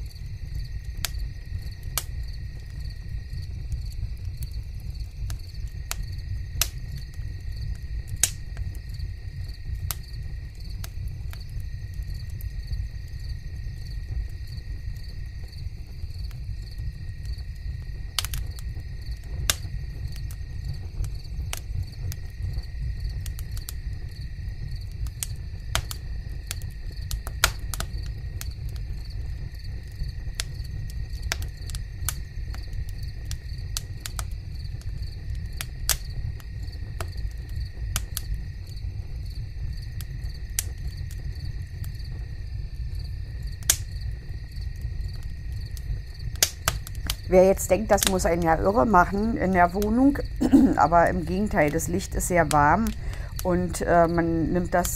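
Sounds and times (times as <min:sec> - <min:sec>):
insect trilling: 0:47.0 - 0:54.9.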